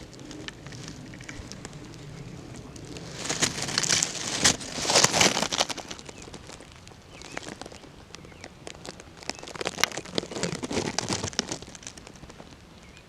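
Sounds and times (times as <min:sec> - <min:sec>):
rustling and crackling: 0:00.0 - 0:13.0
bird chirps: 0:05.9 - 0:08.5.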